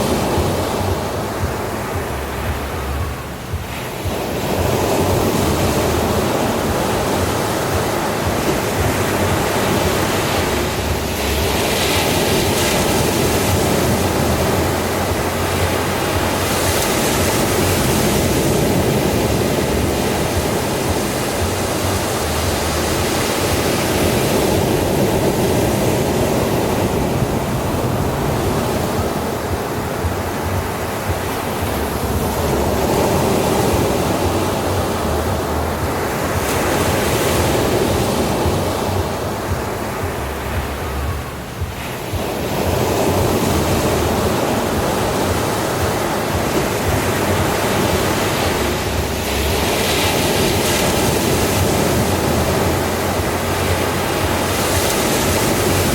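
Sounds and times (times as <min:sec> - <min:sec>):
ocean waves breaking on beach: 0:00.0 - 0:55.9.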